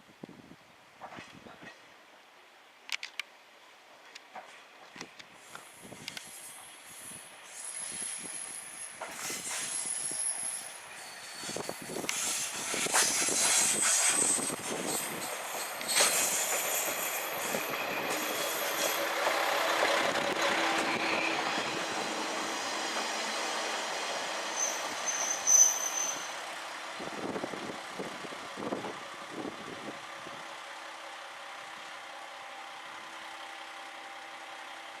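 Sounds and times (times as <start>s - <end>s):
diesel railcar running: 1.0s - 35.0s
high brake squeal: 5.7s - 19.2s, 20.7s - 26.5s.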